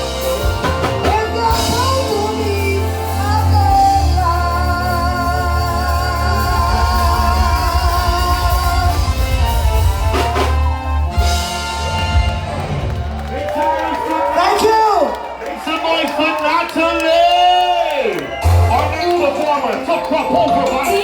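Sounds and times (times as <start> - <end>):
bass line: 0.0 - 13.8, 18.4 - 21.0
person singing long notes: 0.1 - 10.3.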